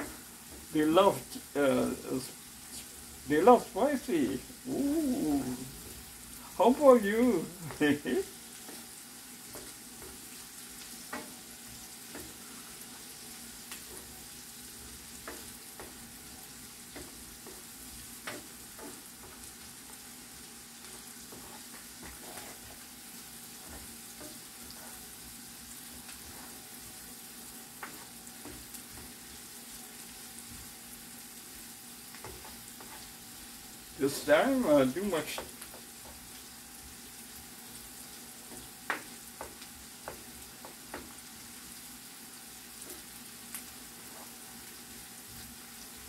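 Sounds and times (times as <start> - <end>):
food sizzling in hot oil: 0.0 - 46.0
stirring clicks and scrapes: 20.9 - 22.8, 32.2 - 33.1.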